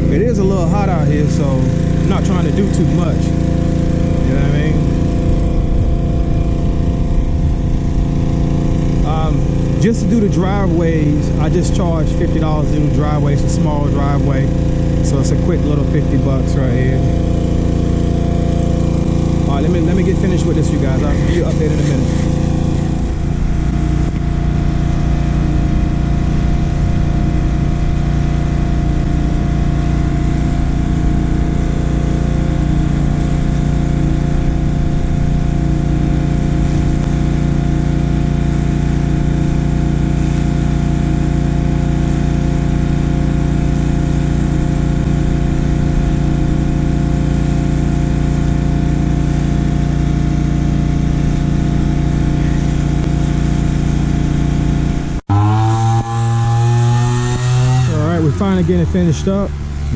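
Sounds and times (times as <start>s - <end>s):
pressure washer engine running: 0.0s - 59.9s.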